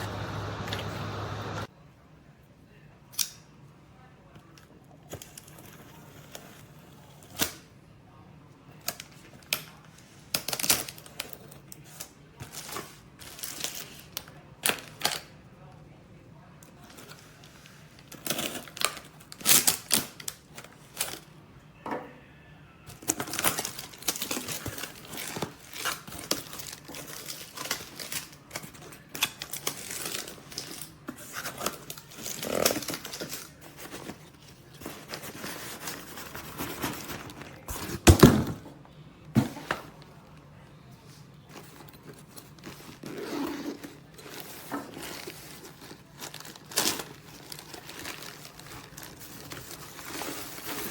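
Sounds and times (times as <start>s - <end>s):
plastic packaging crinkling: 44.0s - 50.9s.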